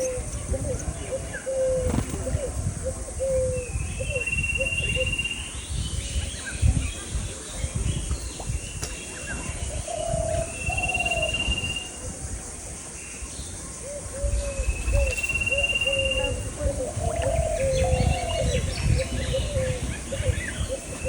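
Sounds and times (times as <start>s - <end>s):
bird cooing: 0.0s - 5.4s, 9.4s - 12.1s, 13.8s - 21.0s.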